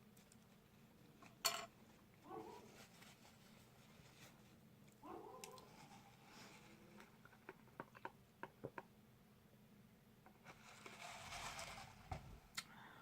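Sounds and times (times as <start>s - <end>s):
soft rustle: 2.2s - 7.1s.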